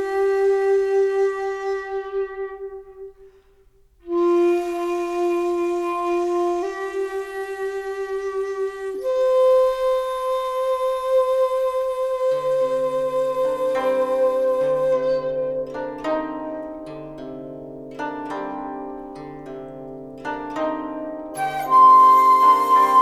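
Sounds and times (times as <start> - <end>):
slow flute-like melody: 0.0 - 16.6, 21.3 - 23.0.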